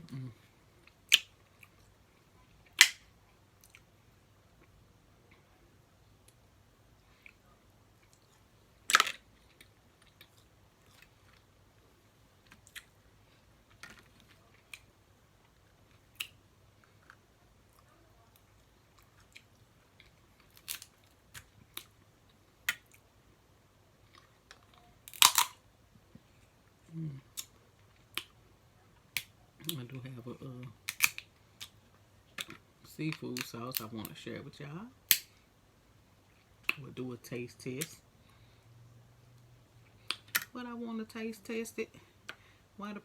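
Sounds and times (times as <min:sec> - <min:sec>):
crab shells cracking: 0:02.7 - 0:03.1, 0:08.9 - 0:10.3, 0:19.2 - 0:21.9, 0:24.2 - 0:25.6, 0:30.8 - 0:31.8, 0:35.1 - 0:35.3
quiet chewing: 0:09.3 - 0:23.1.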